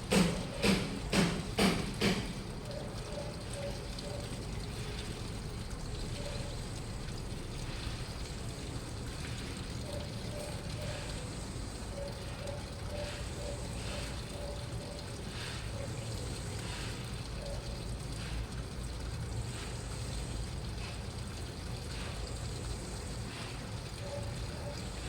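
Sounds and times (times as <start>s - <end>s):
washing machine running: 0.0s - 25.0s.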